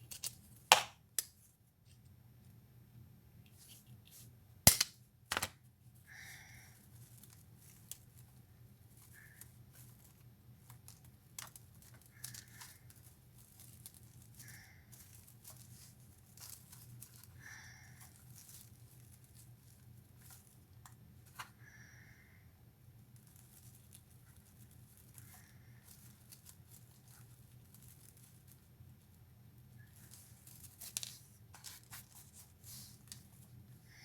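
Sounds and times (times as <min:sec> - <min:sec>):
craft materials rustling: 0:29.8 - 0:33.6.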